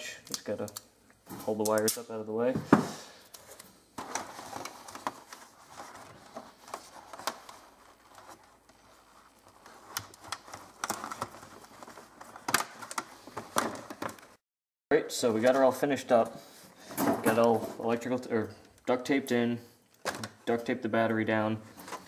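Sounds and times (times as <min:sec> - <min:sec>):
tape and plastic rustling: 0:03.2 - 0:14.4, 0:21.7 - 0:22.0.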